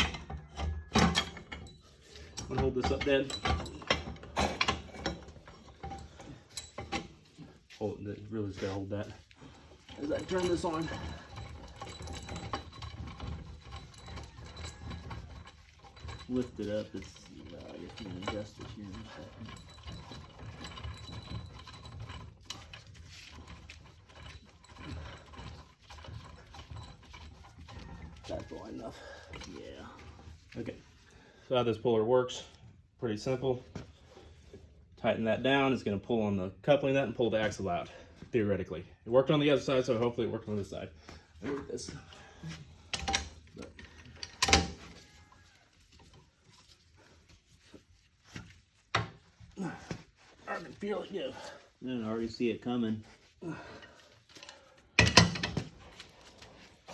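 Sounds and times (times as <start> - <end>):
metal tools clicking and clinking: 0.0 - 7.8, 9.2 - 30.6, 41.4 - 46.2, 53.6 - 56.9
wrench clicking and clanking: 42.9 - 44.9.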